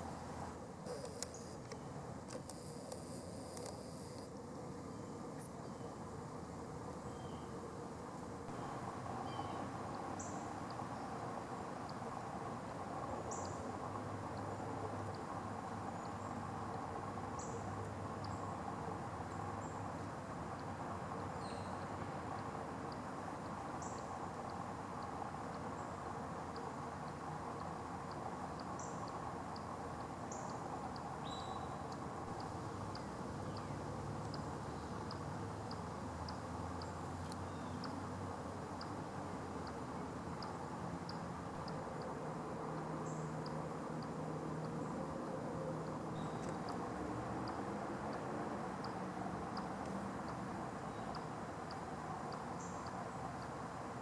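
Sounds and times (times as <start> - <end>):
outdoor background noise: 0.0 - 54.0
chipmunk chipping: 5.4 - 5.7.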